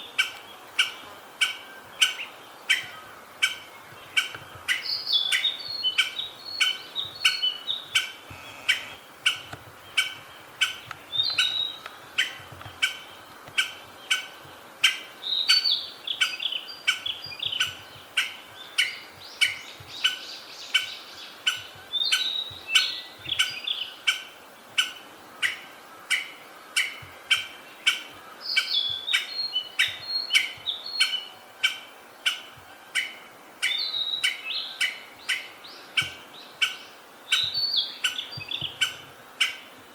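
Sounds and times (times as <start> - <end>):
songbird whistling: 14.1 - 23.9, 25.4 - 32.4, 33.0 - 39.6.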